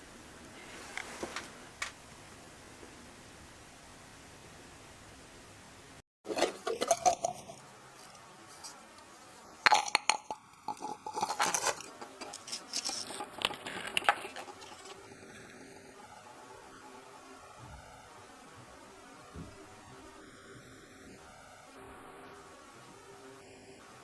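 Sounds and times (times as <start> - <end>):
small hard objects clinking: 6.3 - 8.8, 9.6 - 15.0.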